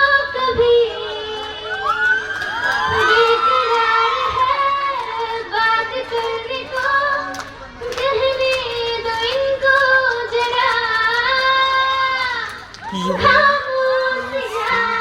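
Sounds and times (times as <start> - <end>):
young woman singing: 12.9 - 15.0.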